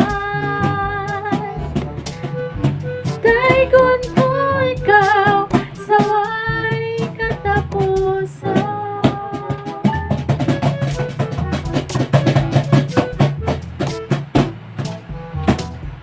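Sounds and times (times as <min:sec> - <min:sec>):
person singing: 0:00.0 - 0:10.2
hand strikes on box drum: 0:00.0 - 0:16.0.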